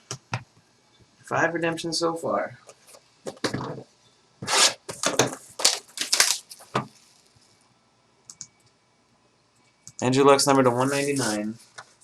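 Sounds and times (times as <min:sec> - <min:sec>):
packaging ripping and crinkling: 0:04.5 - 0:07.3.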